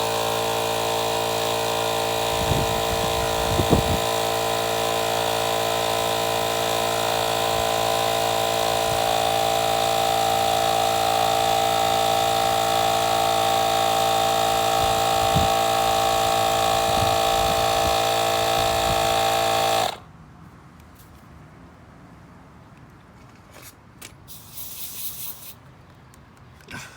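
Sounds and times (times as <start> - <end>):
electric compressor buzzing hum: 0.0 - 20.1.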